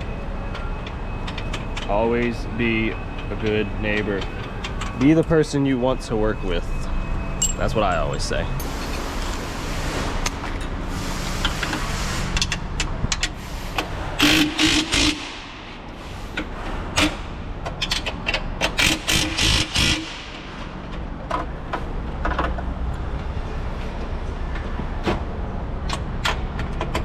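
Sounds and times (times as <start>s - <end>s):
steady low hum: 0.0s - 27.0s
clicks and clatter of parts: 0.5s - 2.3s, 3.9s - 5.1s, 11.4s - 15.3s, 16.3s - 23.3s, 25.8s - 27.0s
power tool running: 14.2s - 15.6s, 18.8s - 20.4s.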